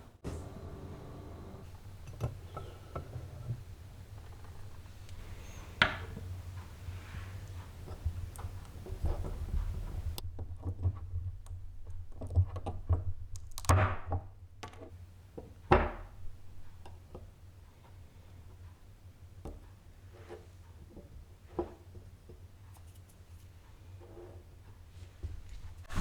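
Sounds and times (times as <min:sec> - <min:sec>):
objects knocking and tapping: 0:02.0 - 0:04.8.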